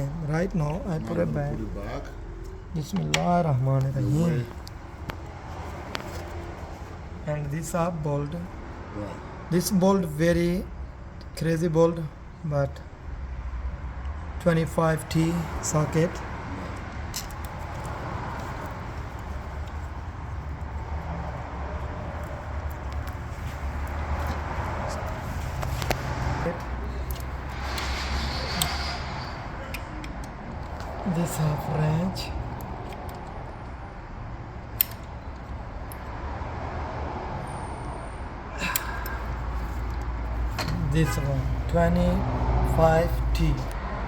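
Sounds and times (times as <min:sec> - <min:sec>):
vehicle-like background rumble: 0:00.0 - 0:44.0
hand tool clicking: 0:34.8 - 0:35.2, 0:38.6 - 0:39.2.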